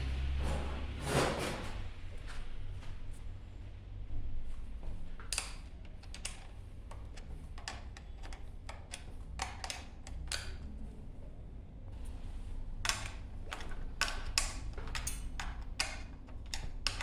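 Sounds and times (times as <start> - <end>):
metal parts and tools clicking: 5.2 - 10.8, 12.8 - 17.0.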